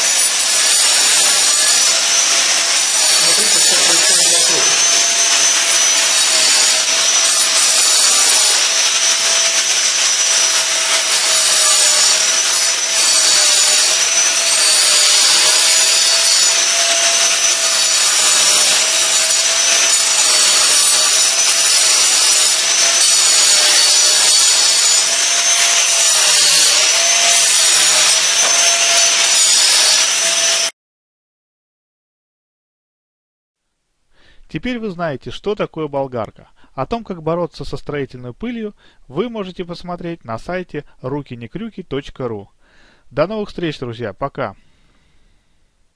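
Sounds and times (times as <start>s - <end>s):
angle grinder cutting concrete: 0.0s - 30.7s.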